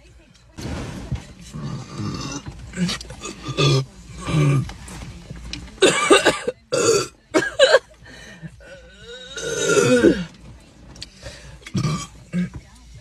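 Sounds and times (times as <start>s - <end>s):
woman burping: 1.6s - 4.7s, 5.8s - 10.3s, 11.6s - 12.6s.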